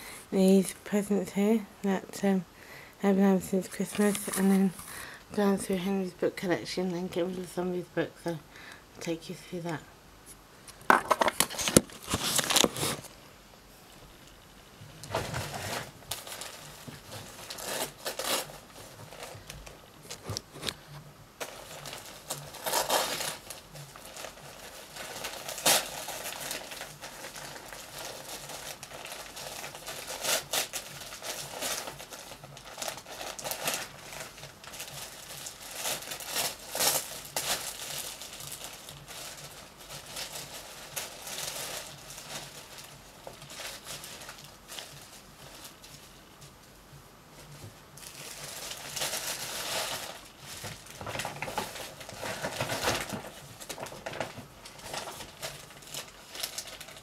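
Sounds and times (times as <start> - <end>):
wrapping paper tearing and rustling: 3.6 - 5.8, 11.0 - 13.1, 15.0 - 46.2, 47.4 - 57.0.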